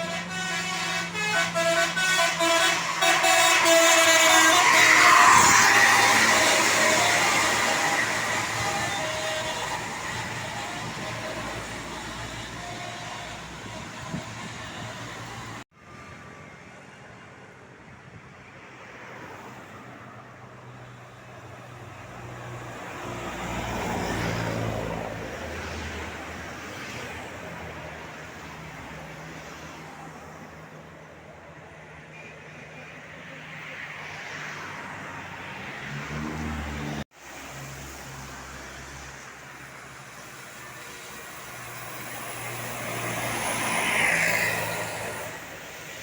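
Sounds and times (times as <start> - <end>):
roadside traffic engines: 0.0 - 46.0
vehicle passing: 1.8 - 15.6, 35.2 - 38.4.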